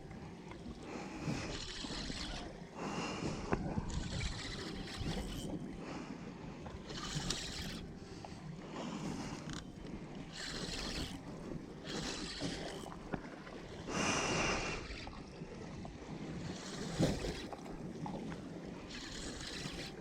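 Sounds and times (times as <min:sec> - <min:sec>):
wind on microphone: 0:03.3 - 0:05.7.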